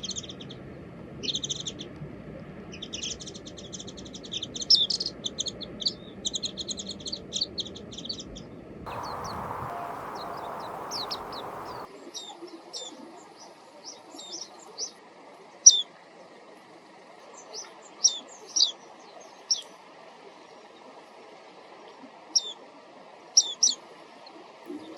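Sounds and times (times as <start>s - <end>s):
high twittering bird chirps: 8.9s - 11.9s
steady hiss: 8.9s - 11.9s
thin high bird call notes: 8.9s - 11.9s.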